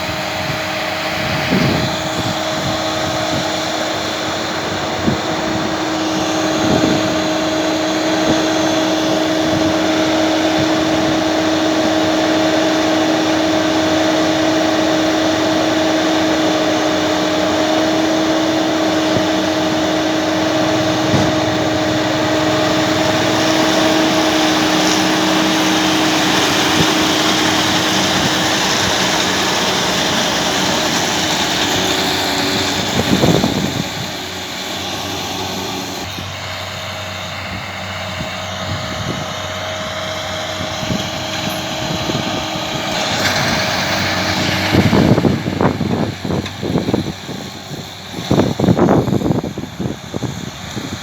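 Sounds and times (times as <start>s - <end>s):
tractor running under load: 0.0s - 51.0s
brief low rumbles: 20.4s - 25.2s.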